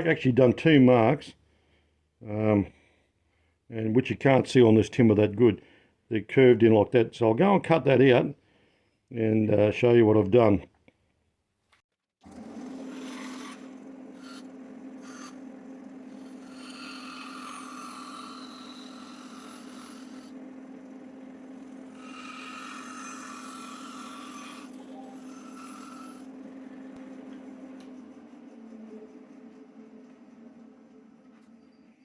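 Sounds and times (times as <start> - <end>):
power saw running: 12.2 - 27.0
saw blade rasping into wood: 12.7 - 15.4, 16.1 - 20.4, 21.9 - 26.3.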